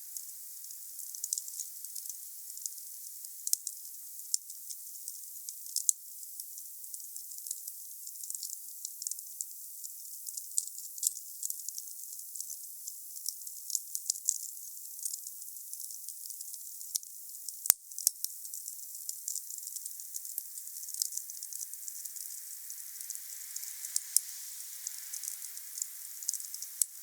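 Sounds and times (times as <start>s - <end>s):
wood fire crackling: 19.7s - 27.0s.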